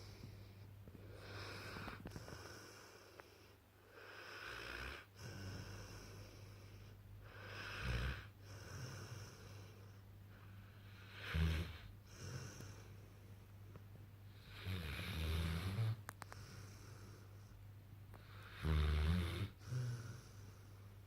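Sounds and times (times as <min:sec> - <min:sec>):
puppy snoring: 0:01.1 - 0:03.4, 0:04.0 - 0:10.0, 0:10.7 - 0:13.1, 0:14.3 - 0:17.2, 0:18.2 - 0:20.8.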